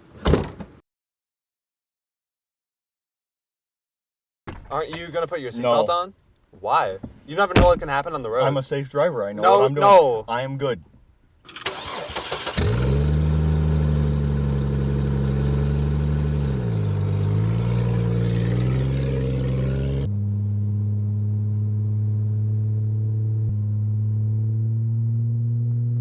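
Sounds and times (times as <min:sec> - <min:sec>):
car engine driving off: 0:04.5 - 0:08.9, 0:09.5 - 0:22.2
dull engine hum: 0:04.5 - 0:12.0.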